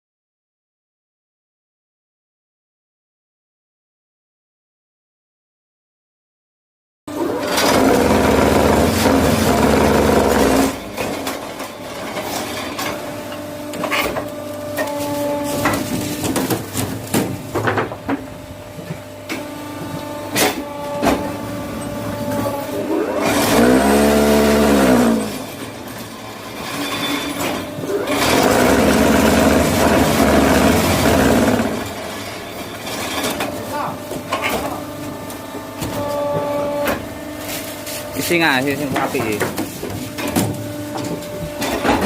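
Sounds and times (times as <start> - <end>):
electric motor running: 7.2 - 10.9, 20.9 - 25.6, 27.8 - 32.0
machine knocks and clanks: 38.8 - 42.0.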